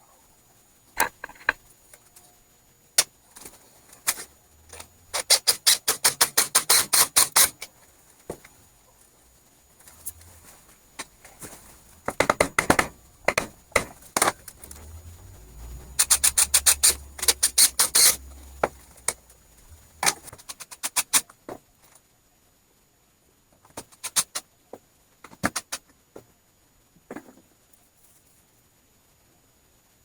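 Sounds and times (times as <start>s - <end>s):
sharp taps and knocks: 12.0s - 14.5s.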